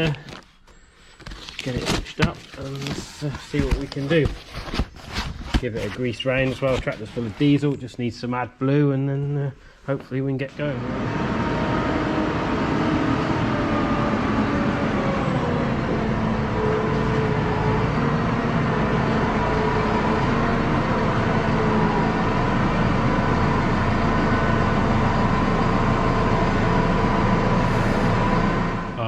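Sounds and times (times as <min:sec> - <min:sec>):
tractor diesel engine running: 0:10.6 - 0:29.0.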